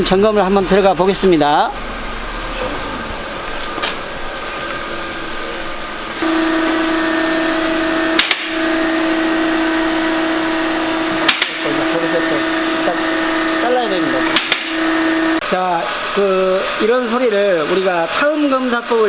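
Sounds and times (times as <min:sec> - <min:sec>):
car engine running: 0:00.0 - 0:15.4
transmission whine: 0:01.8 - 0:15.6
short clicks: 0:11.2 - 0:11.8, 0:14.3 - 0:15.4.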